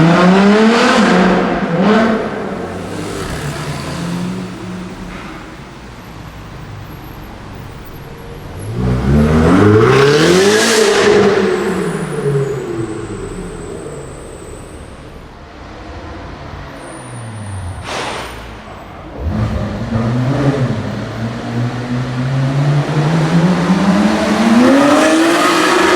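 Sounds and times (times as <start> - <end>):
car accelerating past: 0.0 - 5.5
car engines revving in a tunnel: 0.0 - 25.9.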